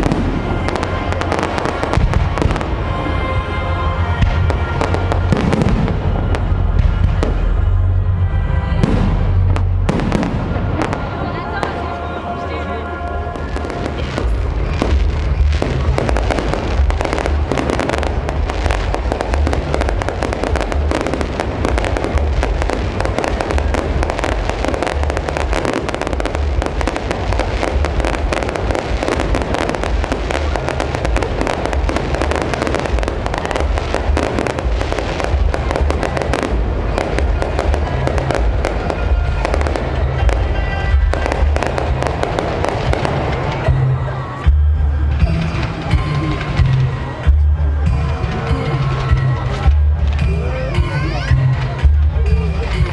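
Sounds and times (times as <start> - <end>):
fireworks bangs and crackles: 0.0 - 52.9
low rumble: 0.0 - 52.9
music playing: 0.0 - 52.9.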